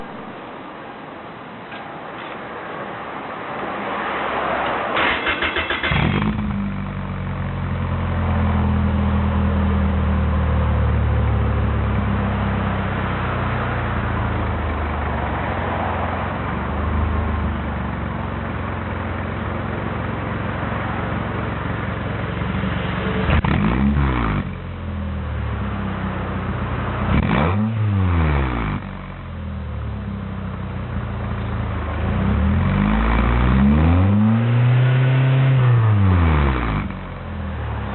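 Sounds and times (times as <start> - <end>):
car engine starting and idling: 4.9 - 37.9
engine revving: 5.0 - 7.2, 20.8 - 24.7, 27.0 - 29.2, 31.7 - 37.9.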